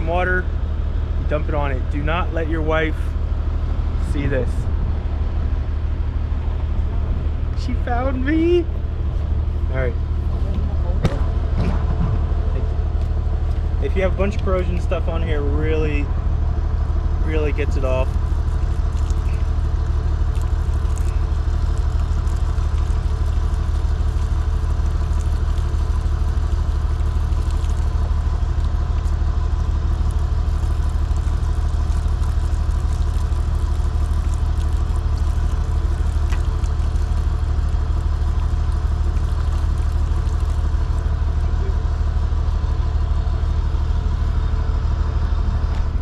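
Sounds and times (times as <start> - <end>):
engine idling: 0.0 - 46.0.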